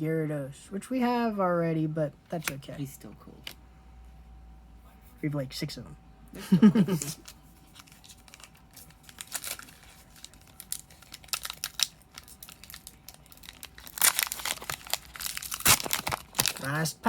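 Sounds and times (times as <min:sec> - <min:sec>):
foil wrapper crinkling: 0:07.0 - 0:17.0
foil pack tearing open: 0:07.8 - 0:16.8.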